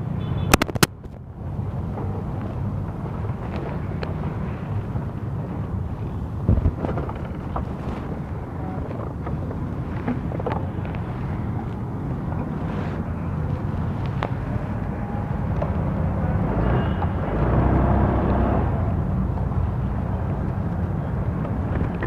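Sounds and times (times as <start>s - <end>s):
wind noise on microphone: 0.0s - 22.0s.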